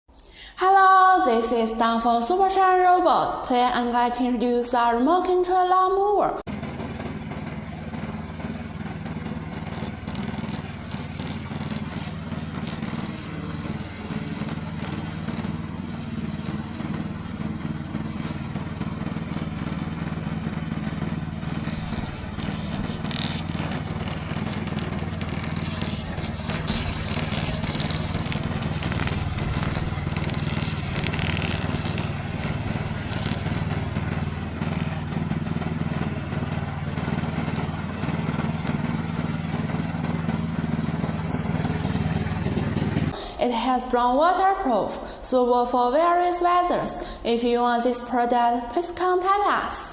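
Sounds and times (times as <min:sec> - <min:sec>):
mower engine running: 0:06.5 - 0:43.2.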